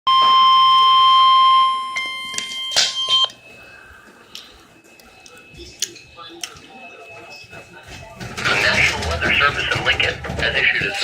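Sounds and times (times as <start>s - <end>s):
high warning beep: 0.1s - 7.6s.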